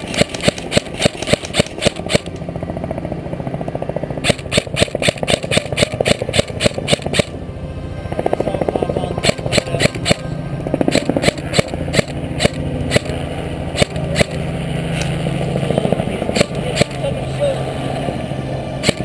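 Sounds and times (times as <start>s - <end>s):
helicopter rotor chopping: 0.0s - 19.0s.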